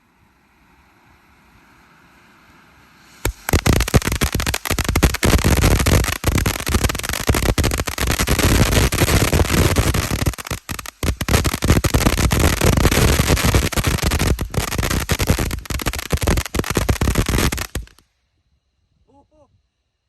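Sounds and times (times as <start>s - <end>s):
firework fountain crackling: 2.8s - 18.0s.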